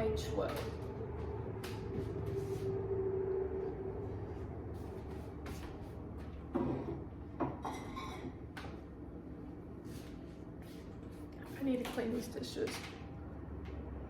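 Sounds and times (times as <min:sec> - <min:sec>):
low hum: 0:00.0 - 0:10.4
dishes rattling: 0:07.5 - 0:08.4.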